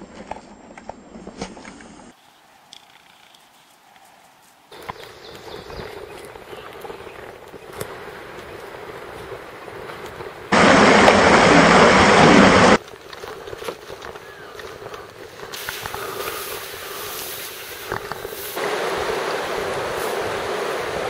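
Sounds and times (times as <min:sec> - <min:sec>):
rushing noise: 0:10.5 - 0:12.8.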